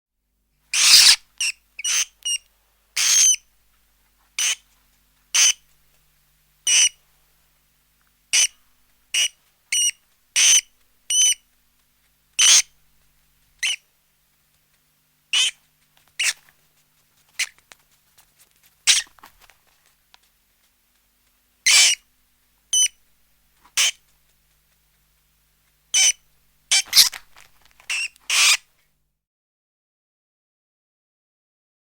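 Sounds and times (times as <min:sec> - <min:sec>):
mice squeaking: 0:00.7 - 0:02.4, 0:03.0 - 0:03.4, 0:04.4 - 0:04.6, 0:05.3 - 0:05.6, 0:06.7 - 0:07.0, 0:08.3 - 0:11.4, 0:12.4 - 0:12.8, 0:13.6 - 0:13.8, 0:15.3 - 0:16.5, 0:17.3 - 0:17.7, 0:18.8 - 0:19.3, 0:21.6 - 0:22.0, 0:22.7 - 0:23.0, 0:23.7 - 0:24.1, 0:25.9 - 0:28.6.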